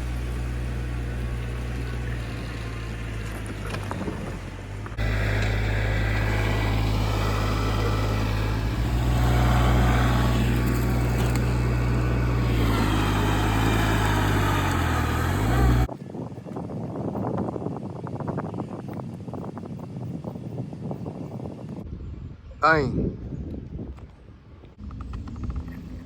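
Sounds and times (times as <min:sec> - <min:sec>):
engine running steadily: 0:00.0 - 0:15.9.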